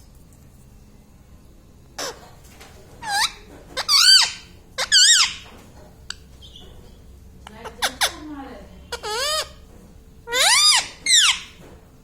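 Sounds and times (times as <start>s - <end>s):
parrot shrill calls: 2.0s - 2.3s, 3.0s - 5.5s, 8.9s - 9.6s, 10.3s - 11.6s.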